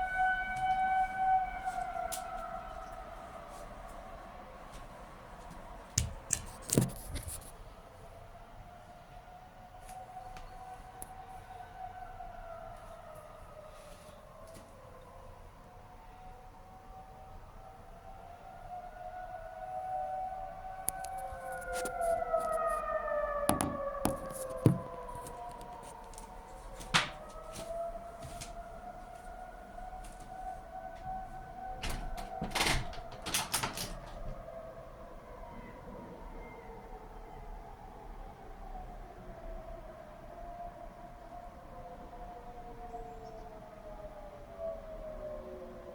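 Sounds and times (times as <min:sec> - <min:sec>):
warning sirens wailing: 0:00.0 - 0:45.9
sharp knocks: 0:23.5 - 0:25.0.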